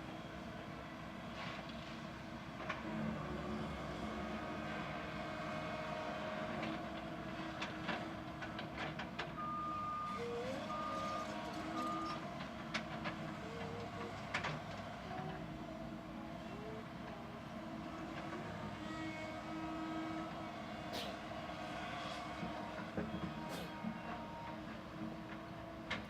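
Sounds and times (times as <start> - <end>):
excavator diesel engine running: 0.0 - 26.0
reversing alarm beeps: 9.4 - 12.2.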